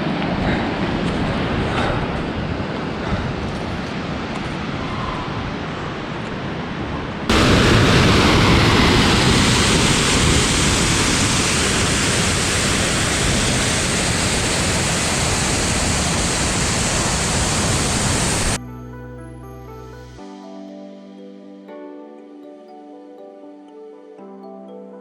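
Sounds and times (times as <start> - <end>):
waterfall roaring: 6.3 - 18.6.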